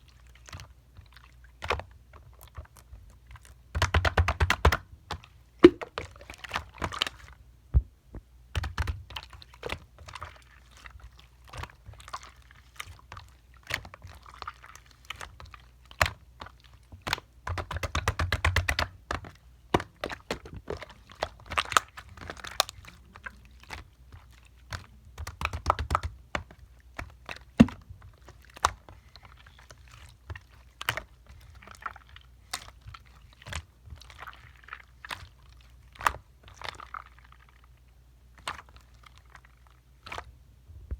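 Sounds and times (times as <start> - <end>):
slime sticky clicks and pops: 5.6 - 5.9.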